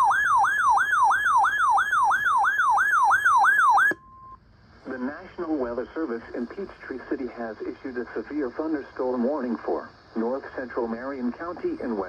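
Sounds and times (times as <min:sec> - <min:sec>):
electronic yelp siren: 0:00.0 - 0:04.4
steady beep: 0:00.0 - 0:04.4.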